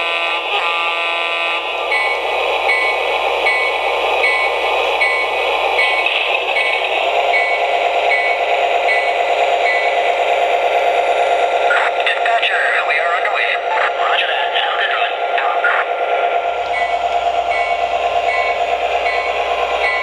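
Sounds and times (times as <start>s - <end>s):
toy train diesel engine sound: 0.0s - 20.0s
toy train bell ringing: 1.8s - 10.2s, 16.6s - 20.0s
rattle of running toy train: 1.8s - 20.0s.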